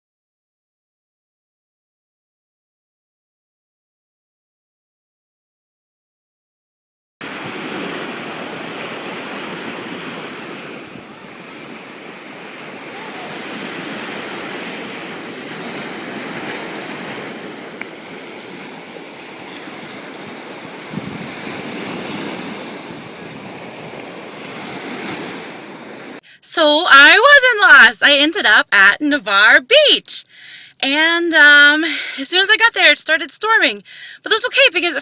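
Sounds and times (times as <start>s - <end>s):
ocean surf washing onto beach: 7.2s - 29.2s
wind buffeting microphone: 7.3s - 26.2s.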